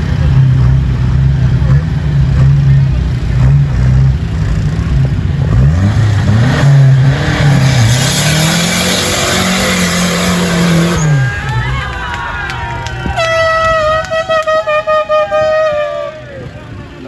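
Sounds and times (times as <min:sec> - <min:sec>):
vehicle engine revving: 0:00.0 - 0:12.1.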